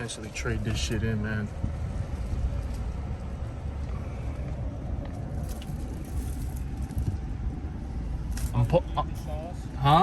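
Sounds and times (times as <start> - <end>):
road noise: 0.0 - 10.0
truck engine rumble: 0.0 - 10.0.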